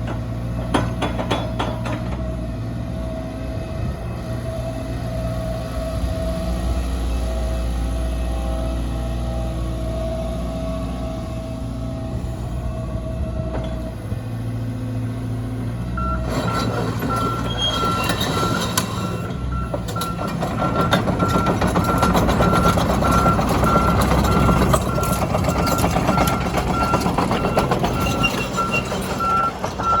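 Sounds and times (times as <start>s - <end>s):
excavator diesel engine: 0.0s - 30.0s
travel alarm beeping: 16.0s - 20.3s.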